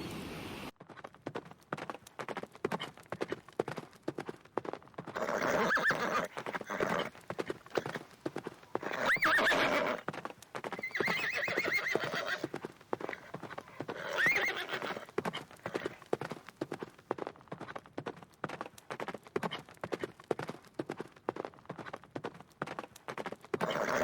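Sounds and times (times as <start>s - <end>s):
animal quavering calls: 10.8s - 16.0s.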